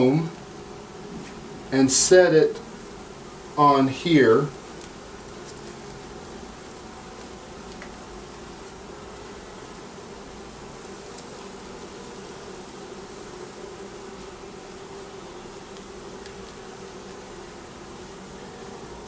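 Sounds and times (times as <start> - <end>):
honeybees buzzing: 0.0 - 19.0
faint ticks: 4.7 - 8.8, 15.7 - 17.3.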